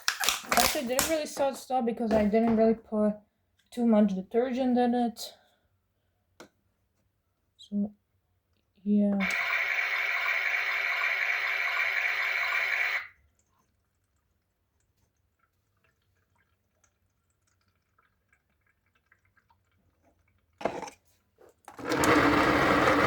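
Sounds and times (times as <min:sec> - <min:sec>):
toy washing machine motor: 0:09.2 - 0:13.1, 0:21.7 - 0:23.0
faint water drips: 0:13.1 - 0:20.6.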